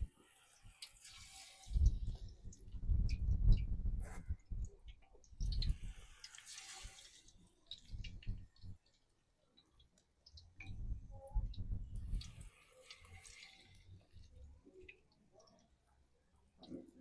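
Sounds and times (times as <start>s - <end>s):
batter sizzling in hot oil: 0.0s - 2.4s, 5.4s - 9.0s, 12.1s - 14.3s
low bumps: 1.8s - 6.0s, 7.9s - 8.8s, 10.6s - 12.4s.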